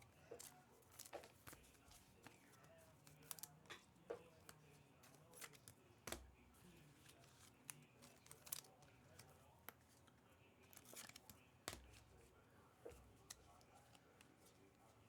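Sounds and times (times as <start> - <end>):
foil wrappers crinkling: 0.2 - 3.7, 4.5 - 9.4, 10.6 - 12.2
cards clicking: 0.3 - 12.3, 12.9 - 14.6.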